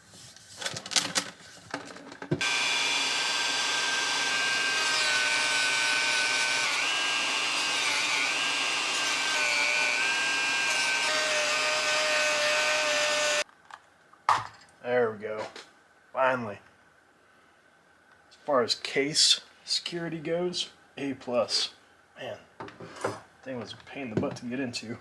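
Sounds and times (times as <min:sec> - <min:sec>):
power tool cutting plastic: 0:02.4 - 0:13.4.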